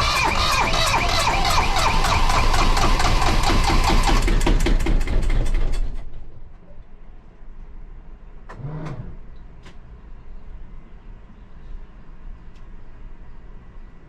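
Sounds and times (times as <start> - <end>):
diesel engine knocking: 0.0 - 6.3.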